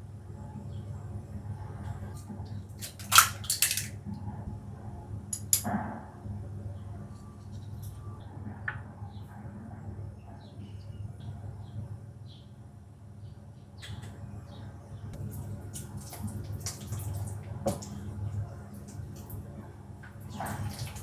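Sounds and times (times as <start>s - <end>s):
kitchen utensils and dishes clattering: 2.8s - 3.9s, 5.4s - 5.7s.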